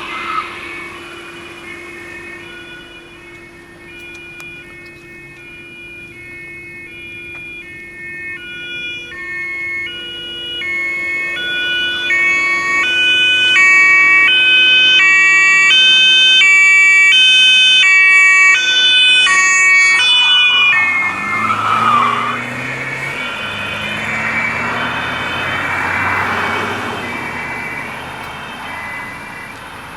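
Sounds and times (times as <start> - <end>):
two-tone police siren: 0.0 - 29.9
car engine revving: 18.5 - 29.9
tyres squealing: 19.3 - 29.9.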